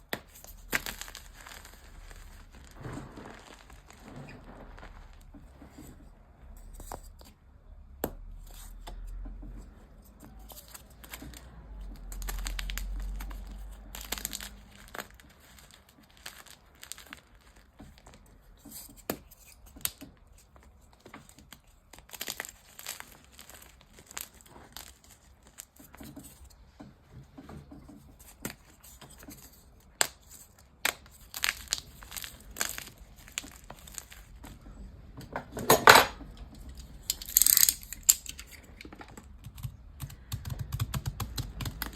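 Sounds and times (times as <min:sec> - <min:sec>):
chalk being crushed: 0:00.0 - 0:05.8, 0:10.1 - 0:26.4, 0:28.2 - 0:34.6, 0:36.7 - 0:38.6.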